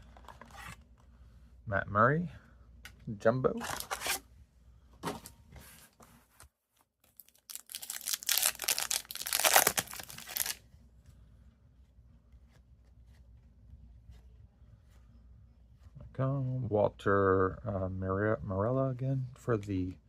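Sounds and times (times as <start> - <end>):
wrapper tearing and crinkling: 7.1 - 10.6.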